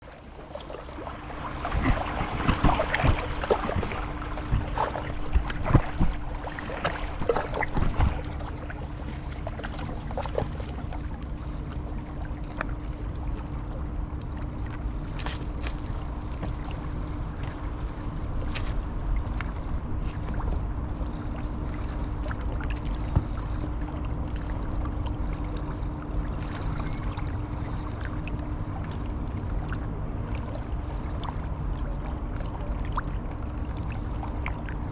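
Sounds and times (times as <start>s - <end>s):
faint hum: 0.0s - 34.9s
river water lapping and splashing: 0.0s - 34.9s
steady low rumble: 0.0s - 34.9s.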